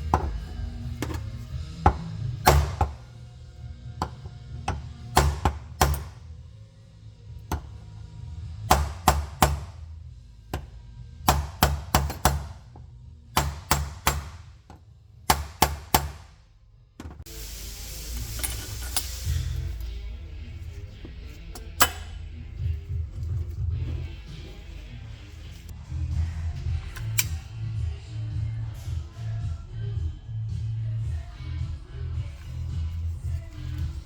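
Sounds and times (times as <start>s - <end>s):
music with low bass line: 0.0s - 16.2s, 18.8s - 34.0s
steady hiss: 17.3s - 19.9s.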